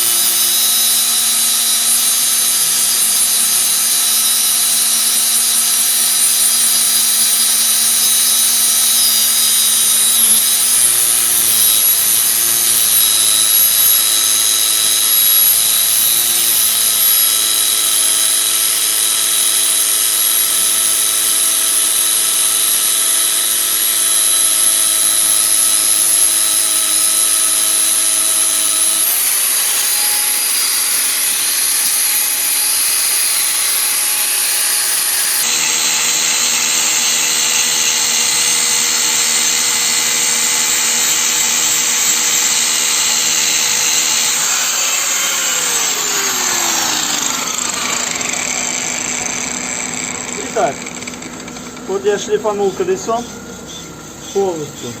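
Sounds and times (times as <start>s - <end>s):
angle grinder grinding metal: 0.0s - 55.0s.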